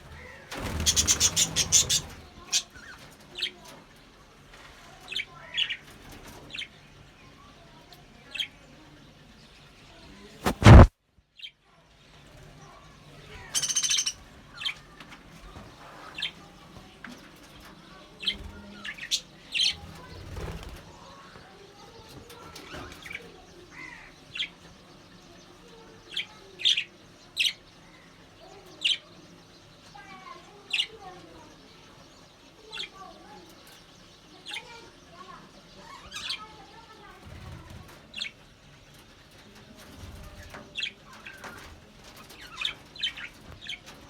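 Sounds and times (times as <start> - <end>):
budgerigars chirping: 0.1 - 3.6, 13.4 - 14.7
loud sudden noise: 10.5 - 10.9.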